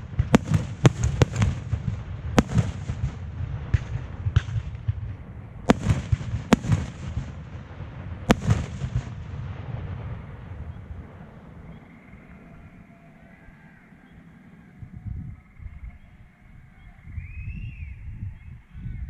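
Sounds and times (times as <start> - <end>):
fireworks crackling: 0.0 - 11.8
fireworks bangs: 0.0 - 12.0
low rumbling echo: 0.0 - 19.0.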